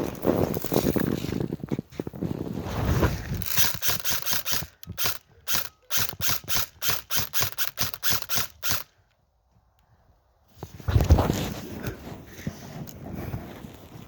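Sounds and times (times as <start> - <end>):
ratcheting strokes: 3.2 - 8.9.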